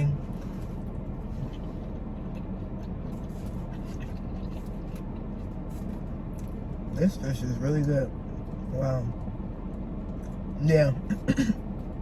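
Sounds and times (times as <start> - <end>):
chewing crispy food: 0.2 - 7.0.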